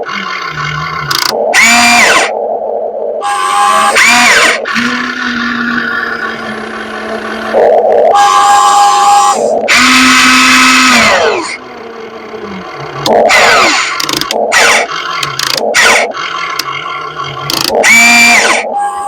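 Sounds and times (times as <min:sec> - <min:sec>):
electric motors whining: 0:00.0 - 0:02.4, 0:03.5 - 0:19.0
short clicks: 0:17.5 - 0:17.8.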